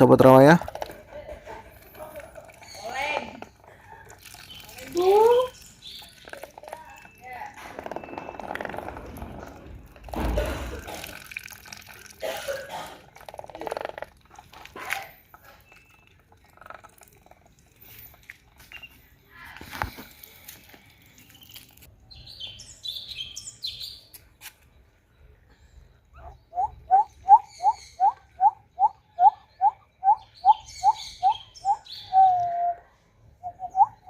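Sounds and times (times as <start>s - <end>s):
thump: 10.1s - 10.8s
higher bird chirps: 20.8s - 34.0s
bird calling: 26.0s - 34.0s.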